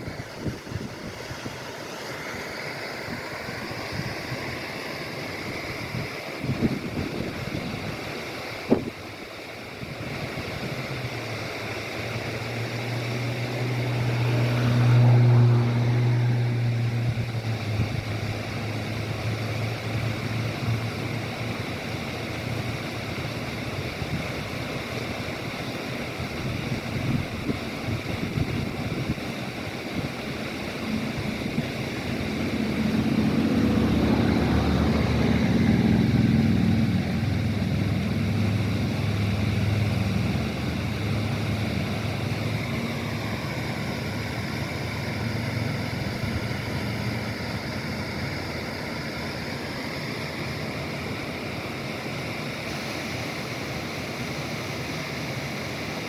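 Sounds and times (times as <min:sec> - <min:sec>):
waterfall rushing: 0:00.0 - 0:56.0
wind buffeting microphone: 0:05.6 - 0:08.0, 0:26.2 - 0:42.8.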